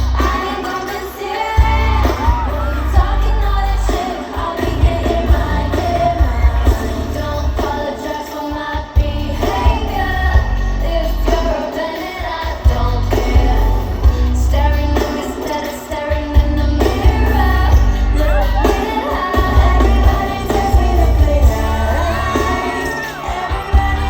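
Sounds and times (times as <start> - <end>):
woman singing: 0.0 - 24.0
heavy bass beat: 1.6 - 7.8.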